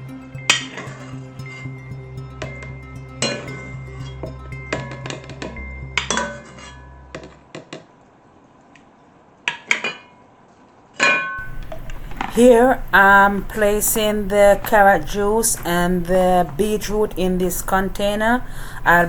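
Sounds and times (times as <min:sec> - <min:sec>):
low hum: 0:00.0 - 0:07.6, 0:11.4 - 0:19.0.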